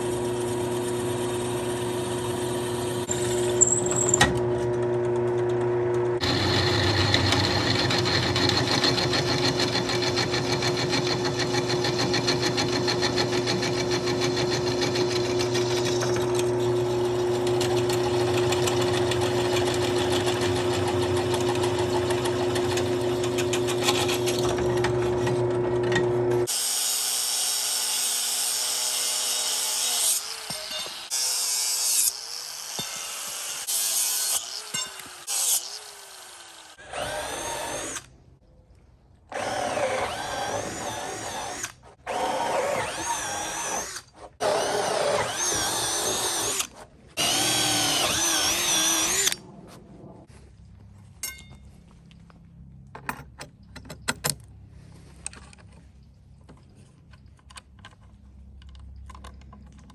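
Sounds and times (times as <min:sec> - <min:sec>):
power drill bursts: 0:39.3 - 0:49.4.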